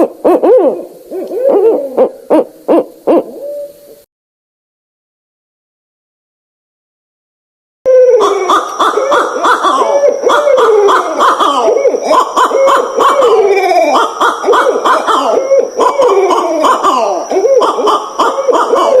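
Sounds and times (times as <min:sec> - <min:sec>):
owls hooting and wailing: 0:00.0 - 0:04.0, 0:07.9 - 0:19.0.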